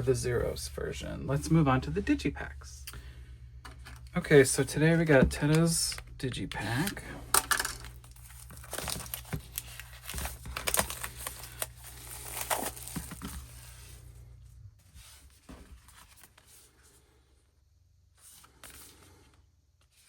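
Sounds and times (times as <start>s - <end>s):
packaging tearing and crinkling: 7.3s - 13.6s.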